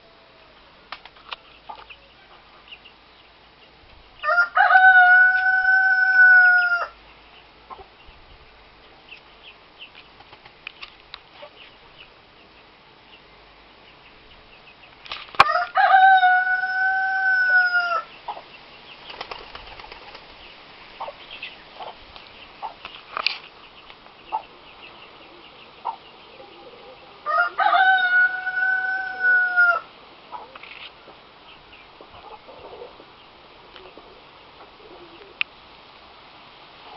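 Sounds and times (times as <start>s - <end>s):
rooster crowing: 4.2s - 7.0s, 15.4s - 18.1s, 27.1s - 29.9s.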